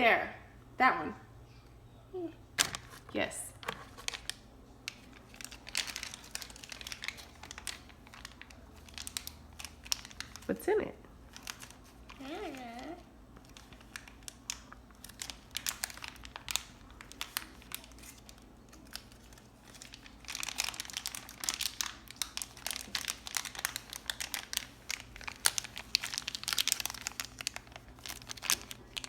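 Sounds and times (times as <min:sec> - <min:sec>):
plastic wrapping crinkling: 0:02.6 - 0:10.6, 0:11.2 - 0:29.0.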